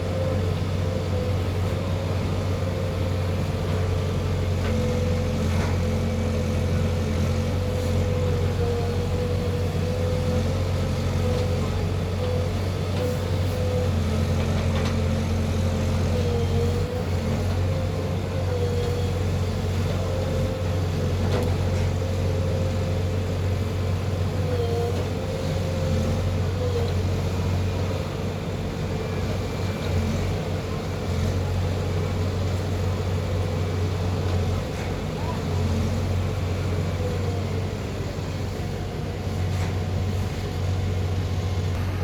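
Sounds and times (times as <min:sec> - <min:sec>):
diesel engine running: 0:00.0 - 0:42.0
high whining tone: 0:41.8 - 0:42.0.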